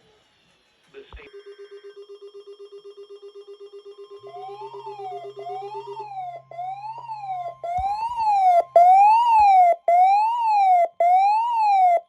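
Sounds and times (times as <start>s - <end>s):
wailing siren alarm: 1.4s - 12.0s
dull bumps: 7.7s - 8.4s.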